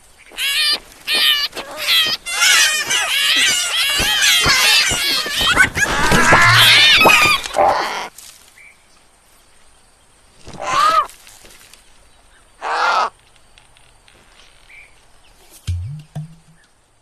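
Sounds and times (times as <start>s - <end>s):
harsh animal calls: 0.3s - 8.1s, 12.6s - 13.1s
animal cries wavering: 0.4s - 8.1s, 10.6s - 11.1s, 12.6s - 13.1s.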